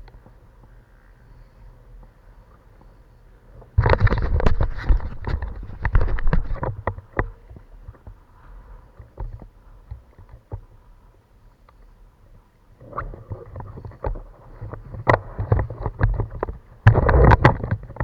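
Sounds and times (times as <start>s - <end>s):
knocks and rustling: 3.8s - 7.3s.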